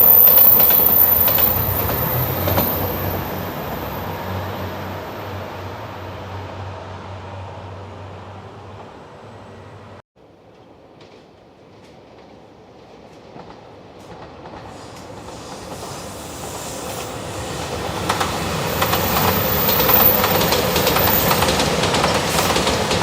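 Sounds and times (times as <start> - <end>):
train passing with rumble: 0.0 - 23.0
wheels clacking over rail joints: 10.4 - 23.0.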